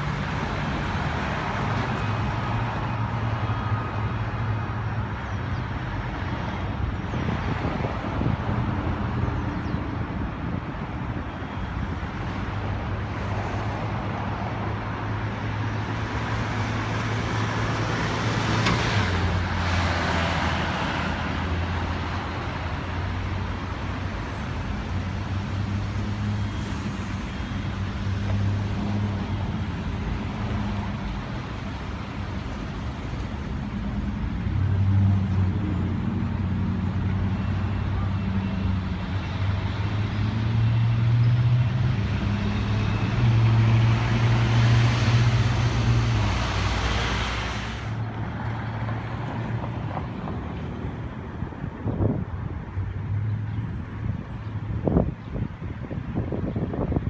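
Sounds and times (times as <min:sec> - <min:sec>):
street traffic: 0:00.0 - 0:57.0
vehicle passing: 0:41.4 - 0:53.5.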